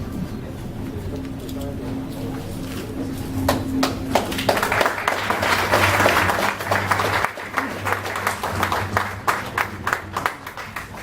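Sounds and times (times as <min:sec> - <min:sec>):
audience applauding: 0:03.5 - 0:11.0.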